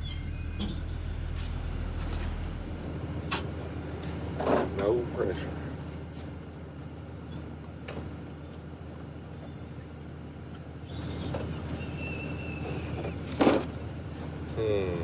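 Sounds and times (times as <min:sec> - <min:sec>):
vehicle engine idling: 0:00.0 - 0:03.0.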